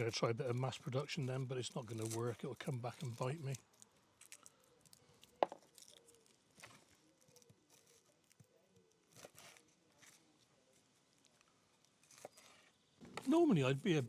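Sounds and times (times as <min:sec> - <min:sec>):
dry papery skins crackling: 0:00.0 - 0:14.0.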